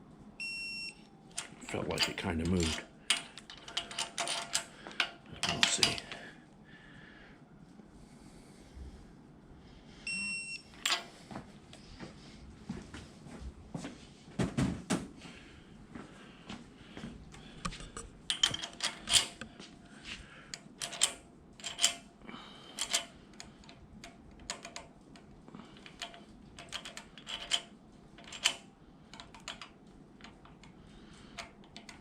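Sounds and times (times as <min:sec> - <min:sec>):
metallic clicks of hand tools: 0:18.3 - 0:19.5, 0:20.5 - 0:22.0, 0:22.8 - 0:24.8.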